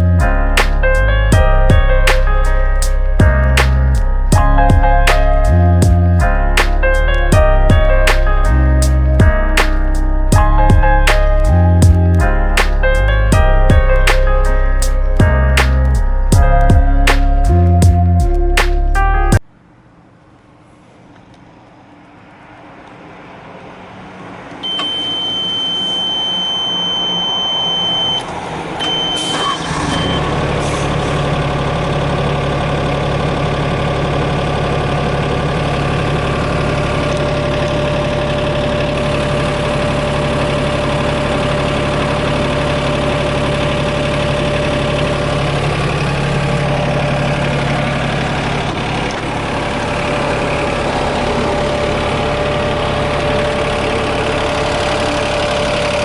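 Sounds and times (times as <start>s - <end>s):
diesel engine starting and idling: 0.0s - 19.4s, 23.0s - 56.0s
short beeps: 24.6s - 30.4s.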